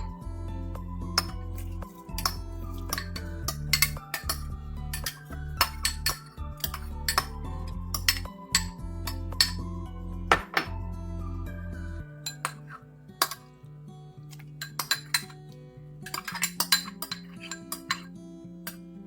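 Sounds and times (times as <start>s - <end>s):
background music: 0.0s - 19.0s
utensils clinking against dishes: 1.2s - 9.6s, 12.2s - 13.5s, 14.3s - 18.8s.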